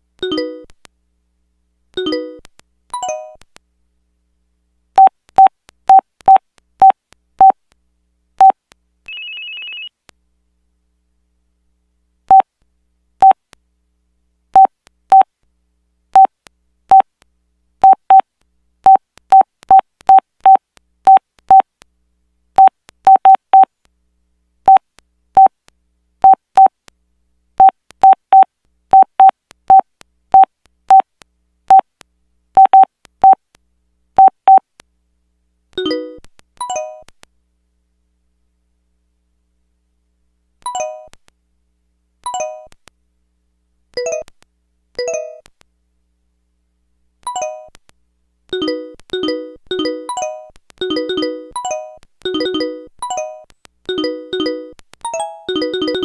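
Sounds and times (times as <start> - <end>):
phone keypad beeps: 9.1 - 9.9, 22.6 - 23.7, 30.4 - 31.0, 32.6 - 33.4, 34.2 - 34.6.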